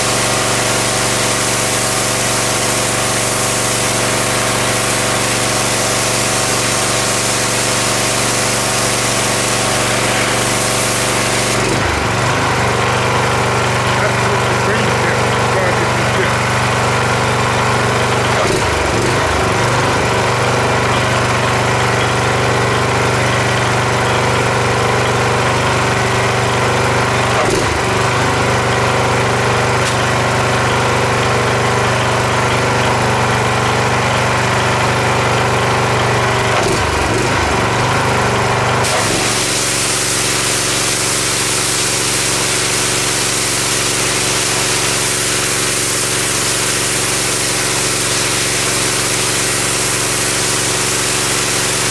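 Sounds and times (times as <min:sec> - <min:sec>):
spray hissing: 0:00.0 - 0:11.7, 0:38.8 - 0:51.9
small engine drone: 0:00.0 - 0:51.9.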